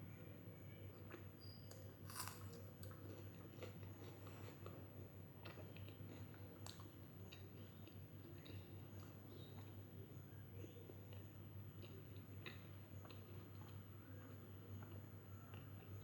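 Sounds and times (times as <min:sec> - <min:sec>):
small crunches: 0:01.1 - 0:04.7
person chewing food: 0:01.1 - 0:09.8, 0:11.1 - 0:16.0.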